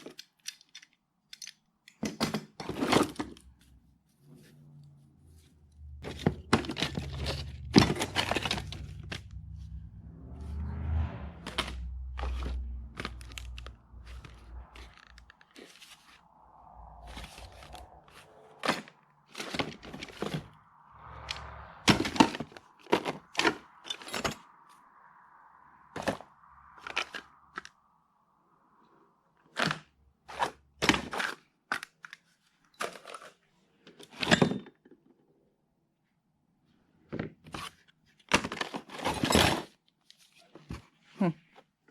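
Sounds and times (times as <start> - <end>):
rumbling handling noise: 5.3 - 24.8.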